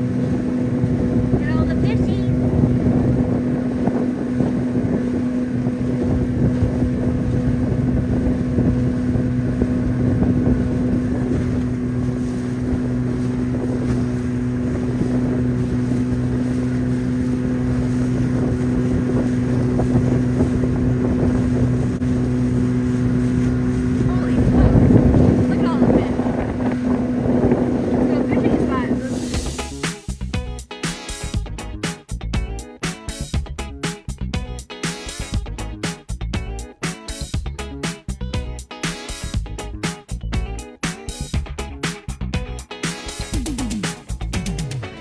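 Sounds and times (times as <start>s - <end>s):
wind buffeting microphone: 0.0s - 29.8s
outboard motor running: 0.0s - 42.7s.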